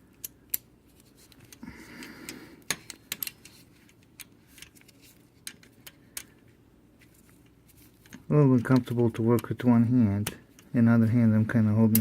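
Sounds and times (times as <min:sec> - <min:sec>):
rustling handling noise: 0:00.8 - 0:09.5.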